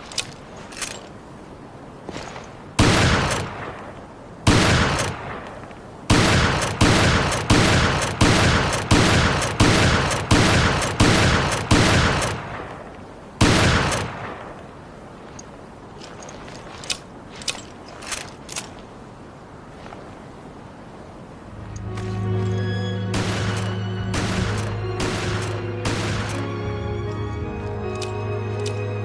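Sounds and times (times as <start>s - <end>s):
shotgun blasts: 2.8s - 3.8s, 4.4s - 5.4s, 6.1s - 12.7s, 23.1s - 26.4s.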